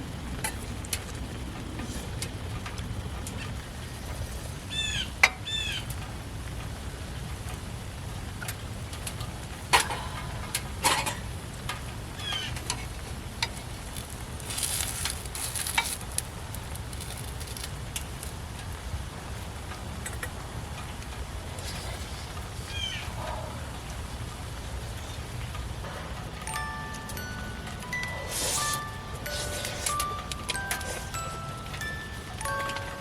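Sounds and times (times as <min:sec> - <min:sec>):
utensils clicking: 0:26.0 - 0:33.0.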